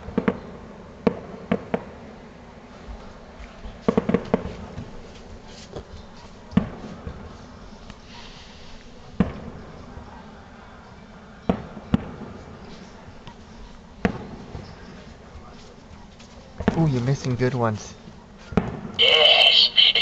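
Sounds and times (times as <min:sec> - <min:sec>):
fireworks bangs: 0:00.0 - 0:01.9, 0:03.8 - 0:05.0, 0:06.5 - 0:07.5, 0:08.3 - 0:10.1, 0:11.5 - 0:13.0, 0:14.0 - 0:15.3, 0:18.5 - 0:20.0.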